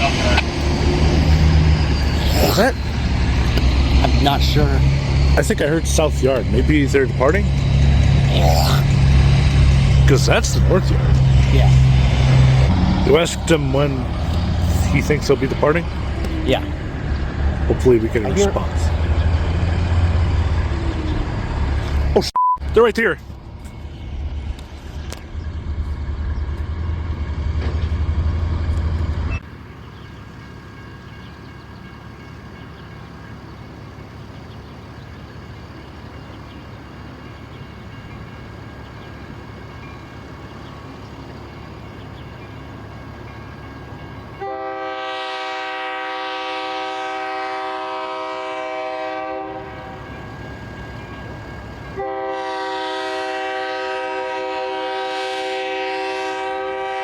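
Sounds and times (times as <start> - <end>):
loud low engine drone: 0.0 - 22.2
train rumble: 0.0 - 57.0
locomotive air horn blast: 44.4 - 50.1, 52.0 - 57.0.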